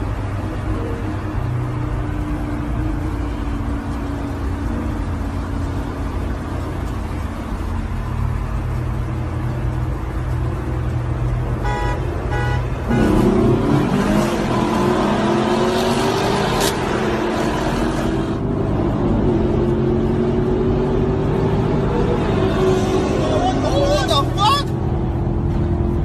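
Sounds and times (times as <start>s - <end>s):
car engine revving: 2.9s - 24.1s
car horn toots: 11.6s - 13.2s.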